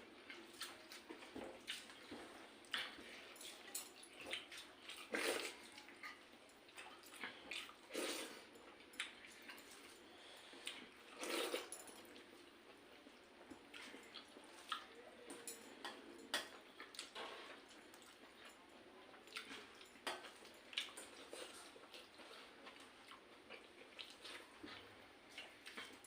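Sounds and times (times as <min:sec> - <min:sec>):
people eating with small smacks: 0:00.0 - 0:26.0.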